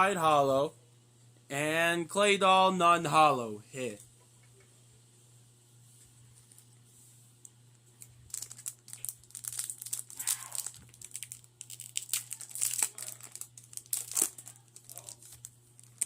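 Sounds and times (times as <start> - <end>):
foil wrapper crinkling: 8.0 - 16.0.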